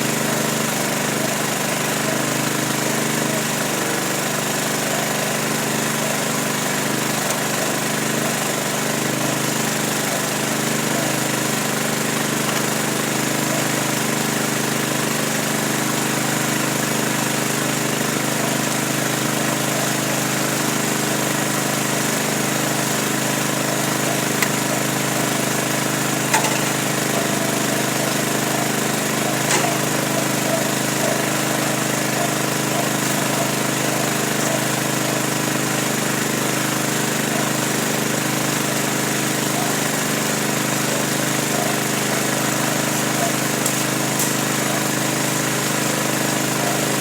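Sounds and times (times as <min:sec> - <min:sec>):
motor humming: 0:21.2 - 0:47.0.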